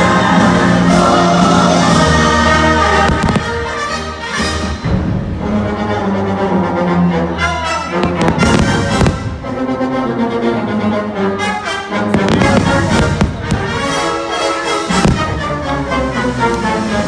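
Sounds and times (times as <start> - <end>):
orchestral music with strings and brass: 0.0 - 17.0
firework bursts: 1.6 - 3.7, 8.0 - 9.4, 12.2 - 14.0.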